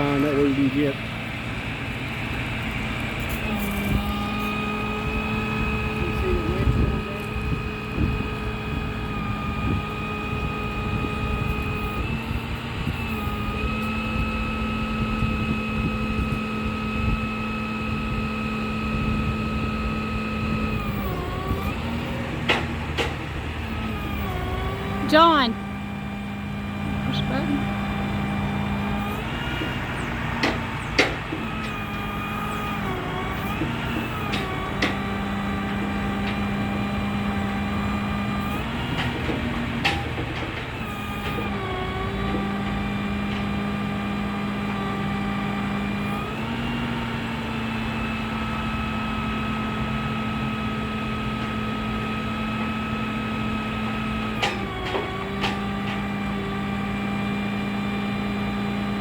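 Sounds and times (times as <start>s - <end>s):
truck engine drone: 0.0s - 59.0s
clicks and clanks: 38.9s - 41.5s, 54.4s - 56.1s.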